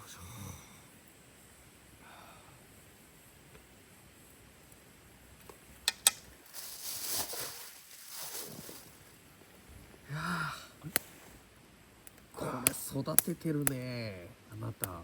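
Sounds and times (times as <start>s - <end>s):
sharp clicks: 5.9s - 6.2s.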